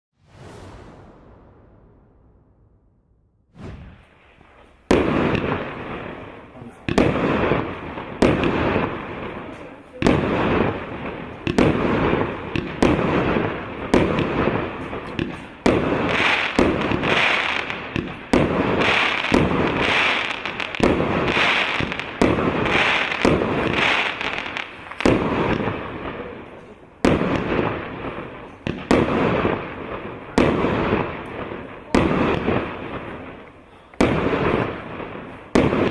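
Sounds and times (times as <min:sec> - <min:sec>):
firework launch bangs: 0:00.2 - 0:06.2, 0:34.0 - 0:35.9
firework crackle: 0:00.2 - 0:35.9.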